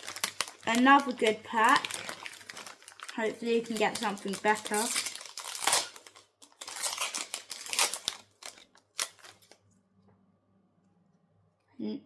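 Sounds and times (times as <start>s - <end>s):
card pack wrapper crinkling: 0.0s - 9.6s.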